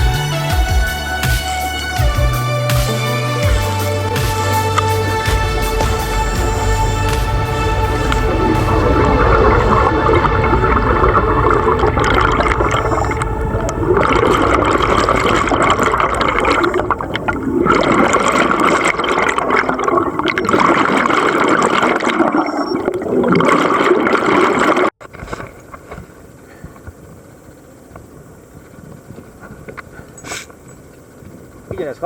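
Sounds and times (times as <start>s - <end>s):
underwater bubbles rushing: 1.5s - 24.9s.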